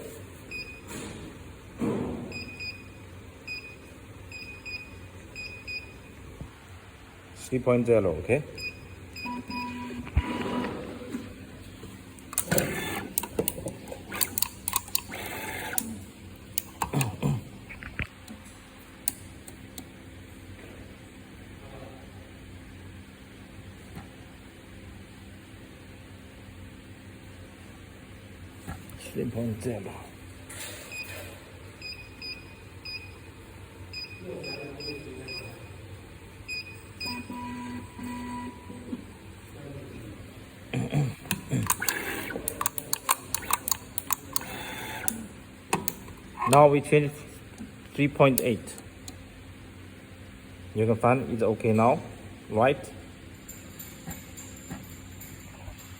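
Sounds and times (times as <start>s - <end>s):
machine humming: 9.2s - 19.9s, 40.6s - 50.8s
sharp mechanical clicks: 12.2s - 17.2s, 41.2s - 46.6s.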